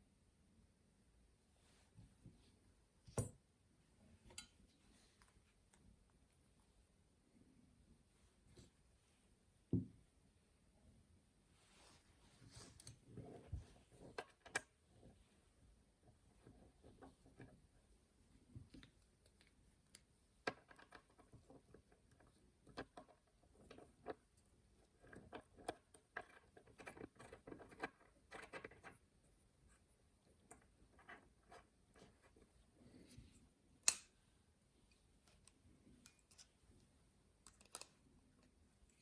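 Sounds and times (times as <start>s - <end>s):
small parts and tools clicking: 35.2s - 36.6s, 37.4s - 39.0s.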